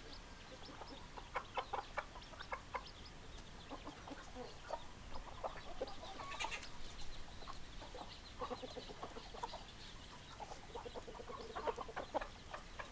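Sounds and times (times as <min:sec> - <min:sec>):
hens clucking: 0:00.0 - 0:12.9
hen squawk: 0:06.1 - 0:06.7.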